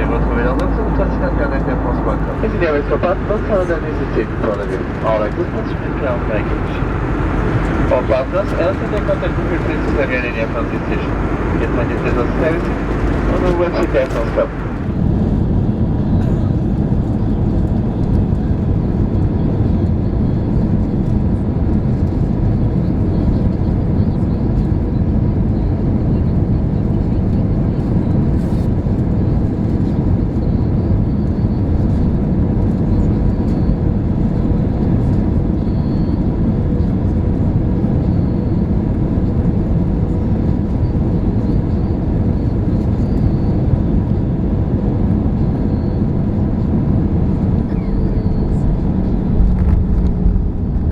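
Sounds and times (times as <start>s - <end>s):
faint constant hum: 0.0s - 15.0s
jet engines and airflow rushing: 0.0s - 23.7s, 24.5s - 50.9s.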